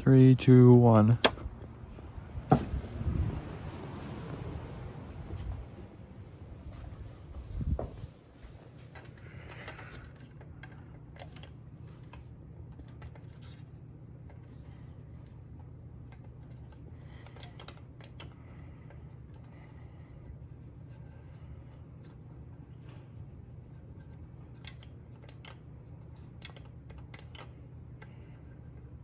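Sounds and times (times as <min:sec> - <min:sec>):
low steady hum: 0:00.0 - 0:29.0
dimmer switch clicks: 0:01.2 - 0:01.5, 0:24.6 - 0:25.6.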